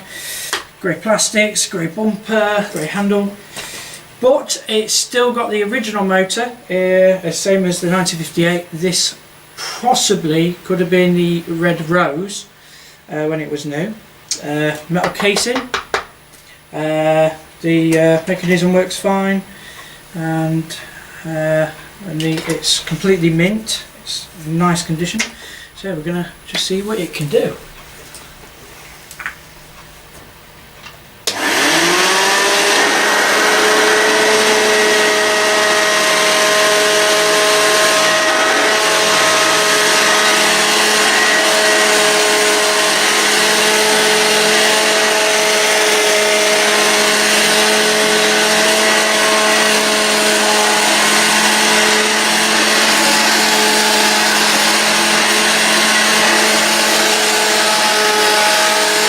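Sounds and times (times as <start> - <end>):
vacuum cleaner rushing hiss: 0.0 - 1.4, 2.0 - 4.3, 9.0 - 10.2, 31.2 - 59.0.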